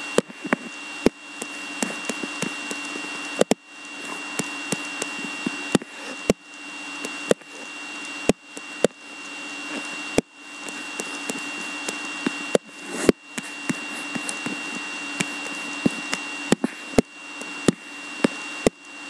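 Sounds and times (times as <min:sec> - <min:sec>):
electrical buzzing hum: 0:00.0 - 0:19.0
sharp clicks: 0:00.2 - 0:03.6, 0:04.4 - 0:12.7.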